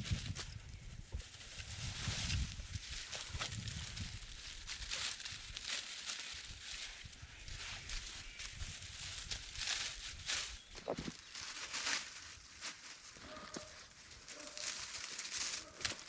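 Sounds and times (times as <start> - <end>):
wind buffeting microphone: 0.0 - 5.4, 7.0 - 10.6
dry leaves and twigs crackling: 0.0 - 16.0.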